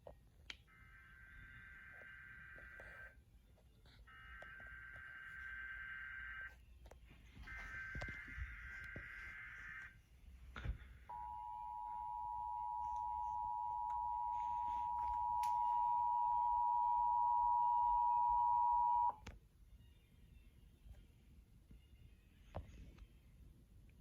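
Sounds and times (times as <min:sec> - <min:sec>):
two-tone alert signal: 0:11.1 - 0:19.2.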